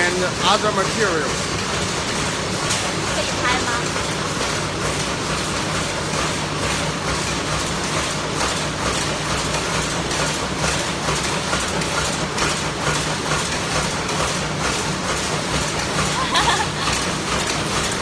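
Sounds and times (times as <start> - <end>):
continuous low hum: 13.4 - 18.0.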